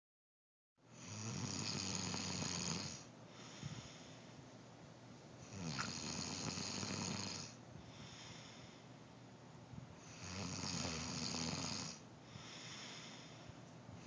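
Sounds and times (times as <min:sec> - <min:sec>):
man snoring: 0:01.0 - 0:03.1, 0:05.5 - 0:07.6, 0:10.1 - 0:13.2
quiet breathing: 0:02.0 - 0:04.6, 0:05.4 - 0:14.0.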